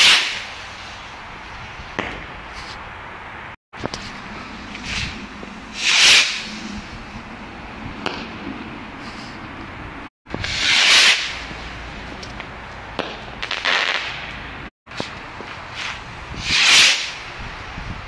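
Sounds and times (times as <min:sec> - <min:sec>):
fireworks sharp cracks: 0:00.0 - 0:02.8, 0:03.8 - 0:06.7, 0:08.0 - 0:08.7, 0:10.3 - 0:17.4
fireworks hissing whooshes: 0:00.0 - 0:02.9, 0:03.8 - 0:18.0.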